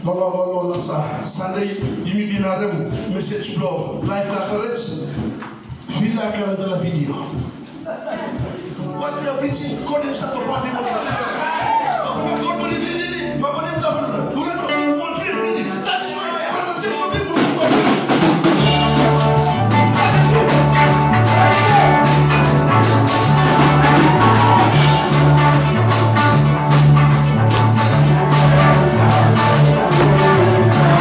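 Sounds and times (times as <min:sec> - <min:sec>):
drums: 0:00.8 - 0:08.8, 0:09.4 - 0:14.9, 0:16.7 - 0:31.0
bass line: 0:18.1 - 0:31.0.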